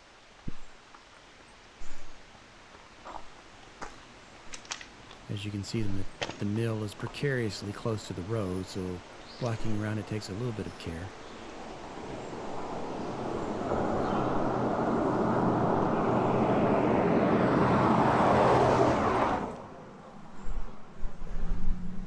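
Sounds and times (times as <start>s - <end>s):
car passing: 11.3s - 22.0s.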